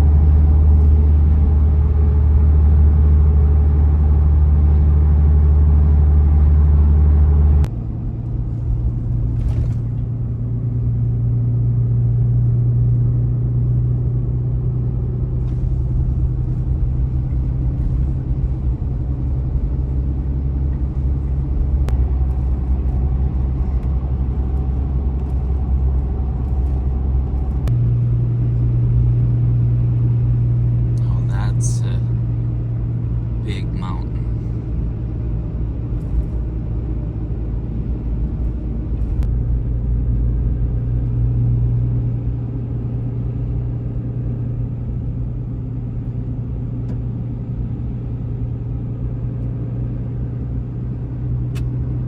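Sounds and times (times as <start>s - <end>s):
car engine: 0.0s - 52.0s
road noise: 0.0s - 52.0s.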